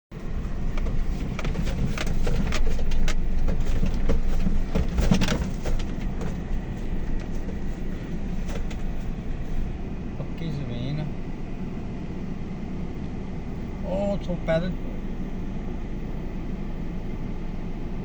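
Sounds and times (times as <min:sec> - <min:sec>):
low rumbling noise: 0:00.1 - 0:18.0
sharp clicks and knocks: 0:00.3 - 0:09.5.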